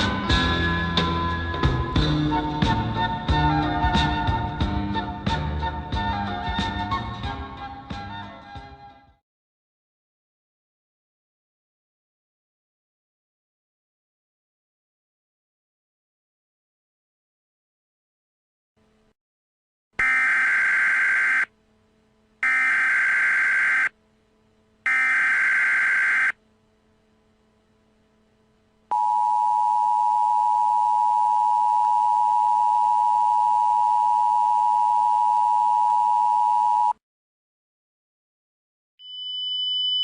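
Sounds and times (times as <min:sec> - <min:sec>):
digital data tone bursts: 0:20.0 - 0:21.5, 0:24.9 - 0:26.4.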